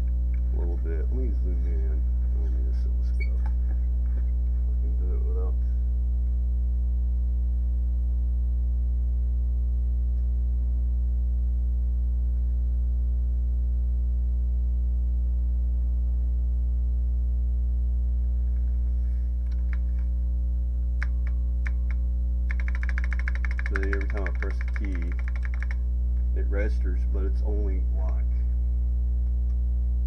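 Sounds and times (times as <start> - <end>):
electrical mains hum: 0.0 - 30.0
short clicks: 21.0 - 25.8.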